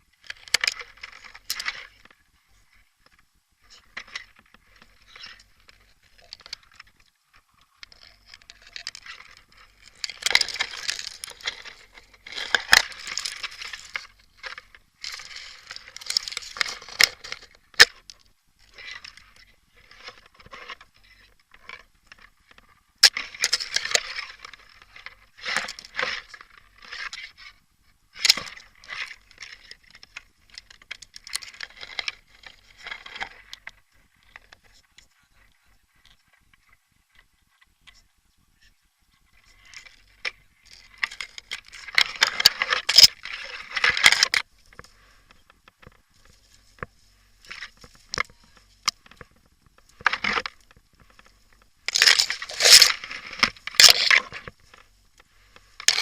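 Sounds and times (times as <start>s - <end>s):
rustling and crackling: 0.0s - 56.0s
gear rattling: 7.7s - 27.6s, 39.5s - 56.0s.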